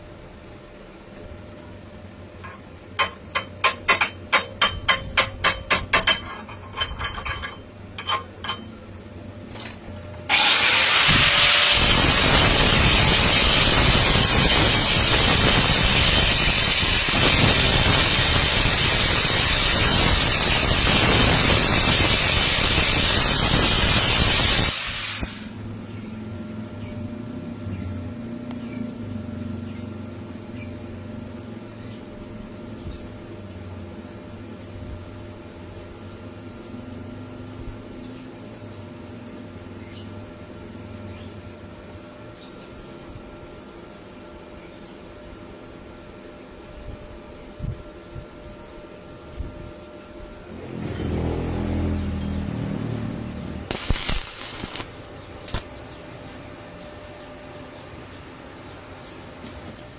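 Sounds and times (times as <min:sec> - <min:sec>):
welding arc hissing: 0:10.3 - 0:25.7, 0:52.4 - 0:56.0.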